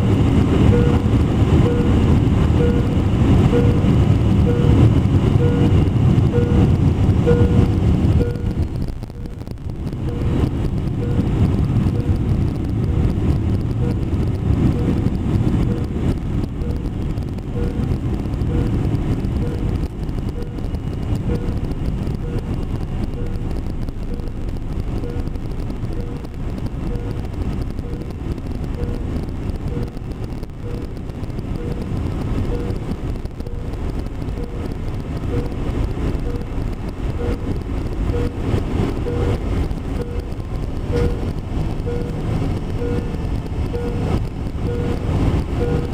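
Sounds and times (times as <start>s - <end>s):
airliner cabin rumble: 0.0s - 45.9s
short electronic beeps: 0.7s - 2.0s, 2.6s - 4.8s, 5.4s - 10.4s, 11.0s - 12.2s, 13.7s - 14.1s, 14.7s - 15.0s, 16.6s - 18.8s, 19.4s - 24.4s, 25.0s - 35.6s, 36.2s - 36.6s, 37.2s - 38.4s, 39.0s - 39.4s, 40.0s - 42.2s, 42.8s - 45.0s, 45.6s - 45.9s.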